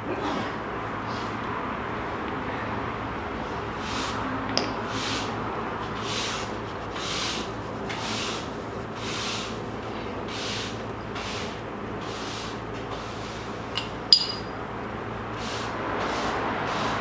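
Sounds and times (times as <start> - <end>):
steady low hum: 0.0 - 15.8
rhythmic scrubbing strokes: 4.9 - 12.6.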